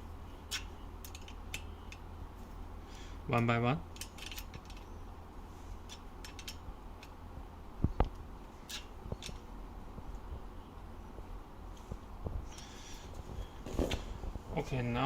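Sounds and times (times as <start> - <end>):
allen key clicking against metal: 0.5 - 2.1, 3.9 - 4.9, 5.9 - 7.2.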